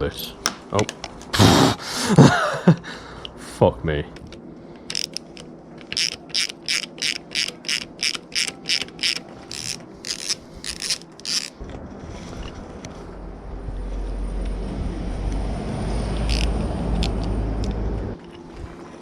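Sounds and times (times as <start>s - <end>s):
ratchet wrench clicking: 4.9s - 11.6s, 16.2s - 17.3s
low steady rumble: 11.6s - 19.0s.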